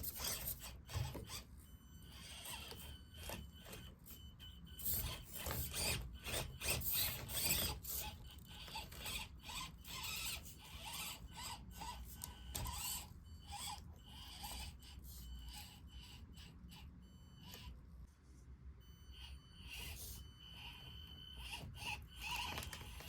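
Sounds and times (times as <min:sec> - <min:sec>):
electric motor and gears whining: 0:00.0 - 0:18.1, 0:18.8 - 0:23.0.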